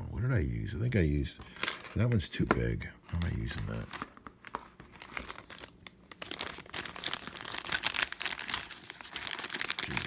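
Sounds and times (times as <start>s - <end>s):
plastic crinkling: 3.1s - 10.0s.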